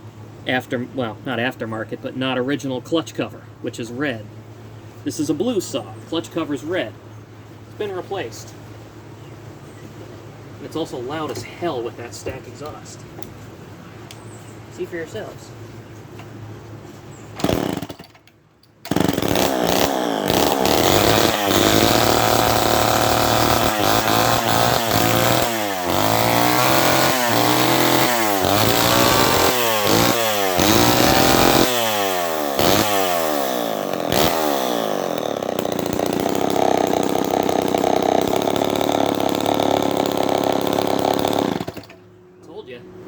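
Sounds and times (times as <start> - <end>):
chainsaw revving: 17.4 - 18.1, 18.9 - 42.0.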